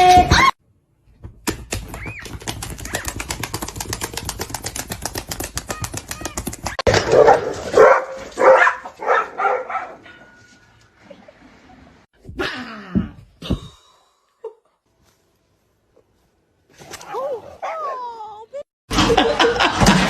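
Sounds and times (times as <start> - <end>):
dog barking loudly: 6.9 - 10.0.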